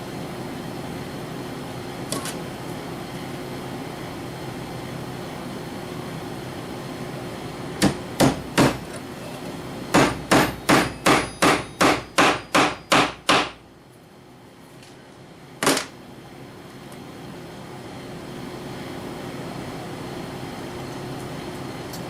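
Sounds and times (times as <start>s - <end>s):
hammer striking tacks into wood: 7.8s - 8.8s, 9.9s - 13.6s.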